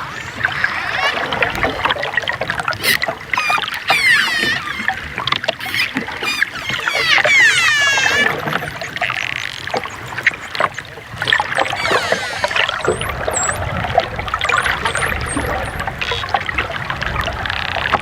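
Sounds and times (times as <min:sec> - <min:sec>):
dolphin high rising chirps: 0:00.0 - 0:01.8, 0:02.8 - 0:08.9, 0:11.6 - 0:13.7, 0:14.4 - 0:15.8
dolphins whistling: 0:00.0 - 0:02.1, 0:02.7 - 0:16.3
dolphin clicks: 0:02.7 - 0:13.8, 0:14.4 - 0:16.4.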